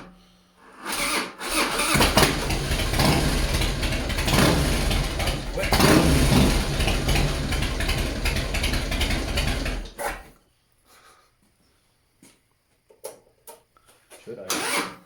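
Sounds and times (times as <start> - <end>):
motorcycle electric starter cranking: 0.8 - 10.2, 14.5 - 15.0.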